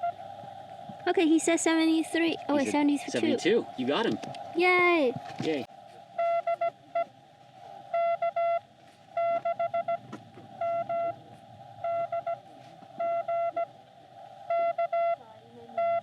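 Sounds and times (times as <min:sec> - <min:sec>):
radio band noise hiss: 0:00.0 - 0:16.0
morse code beeps: 0:06.2 - 0:07.1, 0:07.9 - 0:11.2, 0:11.8 - 0:13.8, 0:14.5 - 0:16.0.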